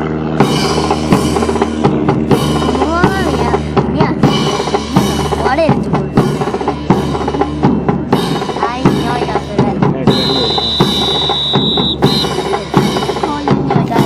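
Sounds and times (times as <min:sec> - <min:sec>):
band music with drum beat: 0:00.0 - 0:14.0
high whistle-like tone: 0:10.1 - 0:12.5.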